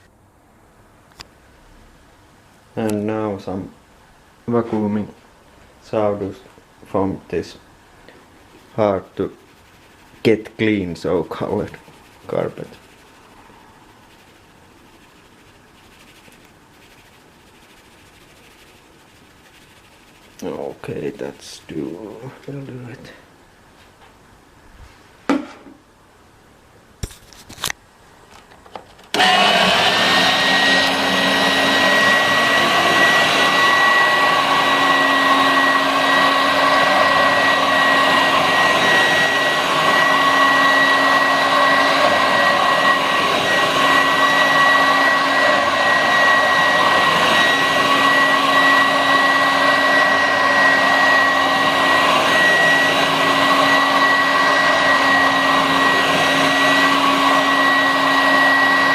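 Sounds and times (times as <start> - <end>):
vacuum cleaner running: 8.4 - 22.2, 29.1 - 58.9.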